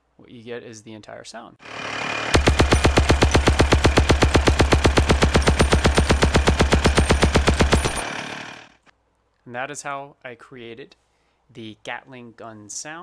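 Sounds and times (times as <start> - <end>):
chainsaw whirring: 1.6 - 8.9
gatling gun firing: 2.3 - 8.6.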